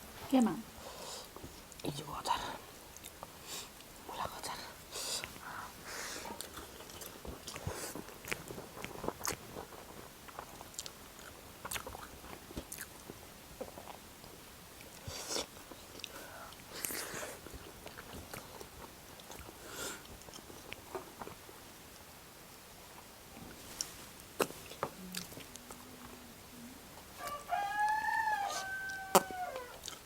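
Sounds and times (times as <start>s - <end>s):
chewing crunchy fried chicken: 5.1s - 25.8s, 27.2s - 30.0s.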